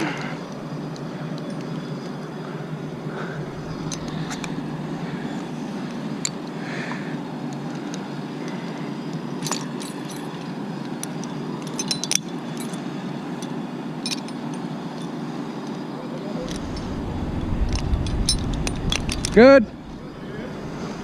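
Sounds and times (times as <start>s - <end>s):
steady low rumble: 2.7s - 6.2s, 16.4s - 21.0s
metal climbing hardware clinking: 3.5s - 4.8s, 9.4s - 15.2s, 16.4s - 20.2s.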